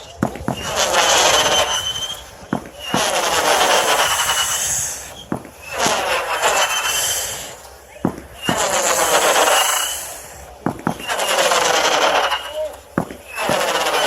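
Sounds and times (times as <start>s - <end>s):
firework bangs: 0.0s - 14.0s
firework crackling hiss: 0.0s - 14.0s
firework whistling: 0.0s - 14.0s.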